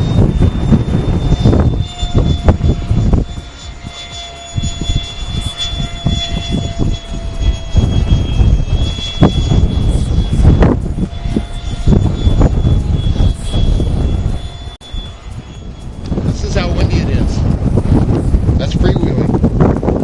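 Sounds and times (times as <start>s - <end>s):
model airplane motor whine: 0.0s - 20.0s
wind buffeting microphone: 0.0s - 20.0s.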